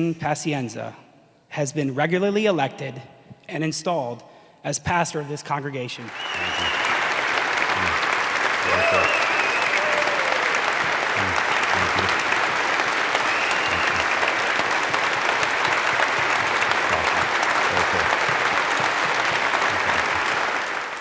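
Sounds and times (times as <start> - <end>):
congregation applauding: 6.0 - 21.0
short whistle: 6.1 - 7.1, 8.7 - 10.4, 13.2 - 14.4.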